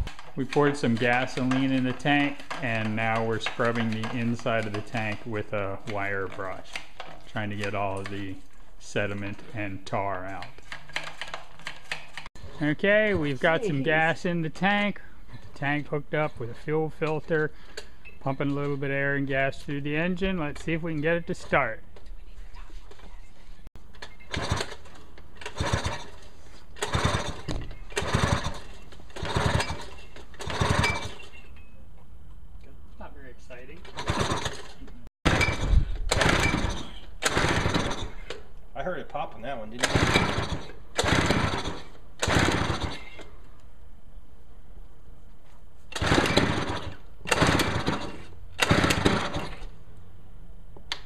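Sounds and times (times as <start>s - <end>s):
engine turning over: 24.3s - 26.2s, 26.8s - 31.2s, 33.9s - 38.3s, 39.8s - 43.2s, 45.9s - 49.8s
outboard motor recoil starter pulls: 24.3s - 26.2s, 26.8s - 31.3s, 33.8s - 38.4s, 39.8s - 43.2s, 45.9s - 49.7s.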